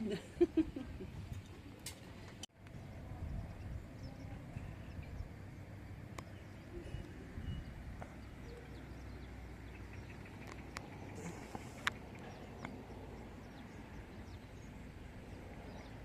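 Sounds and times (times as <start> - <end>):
steady low rumble: 0.0 - 16.0
faint bird chirps: 6.2 - 16.0.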